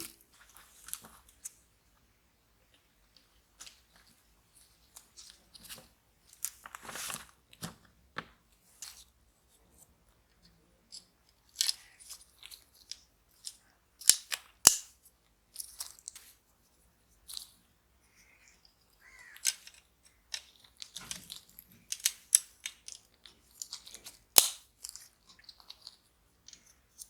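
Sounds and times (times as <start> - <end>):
clicks and taps of small parts: 10.9 - 14.9, 19.3 - 27.0.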